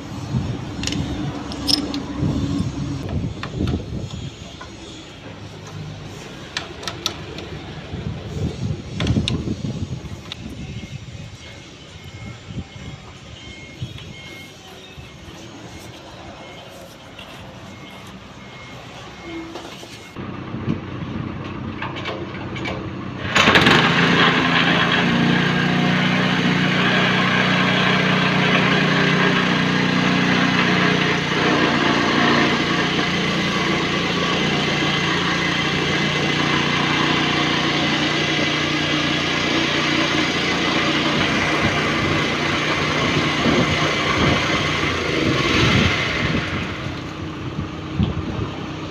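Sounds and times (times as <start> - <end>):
high-pressure spray pump running: 23.3 - 47.6.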